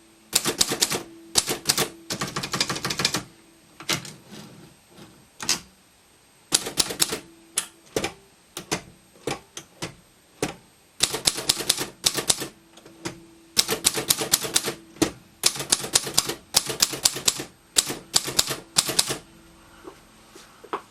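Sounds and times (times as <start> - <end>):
manual typewriter keys striking: 0.4 - 3.3, 6.5 - 7.3, 7.9 - 19.2.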